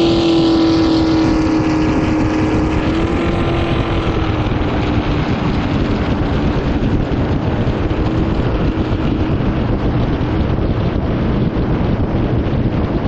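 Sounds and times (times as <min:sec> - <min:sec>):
jet boat engine: 0:00.0 - 0:13.0
wind buffeting microphone: 0:00.0 - 0:13.0.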